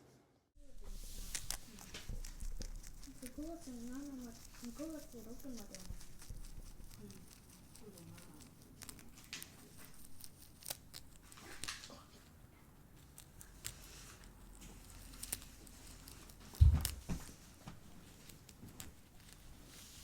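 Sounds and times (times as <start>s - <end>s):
crinkling and rustling handling: 0.6s - 20.0s
loud thump: 16.6s - 17.2s.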